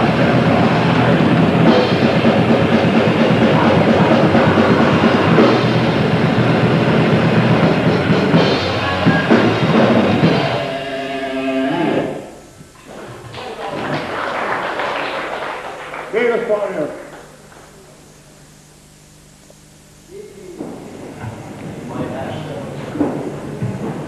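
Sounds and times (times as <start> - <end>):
grindcore band playing: 0.0 - 12.2.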